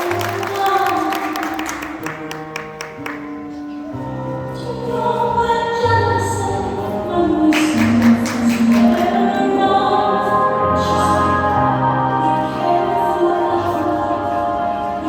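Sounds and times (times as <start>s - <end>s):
choral music with sustained chords: 3.6s - 15.0s
percussion hits: 7.5s - 9.4s.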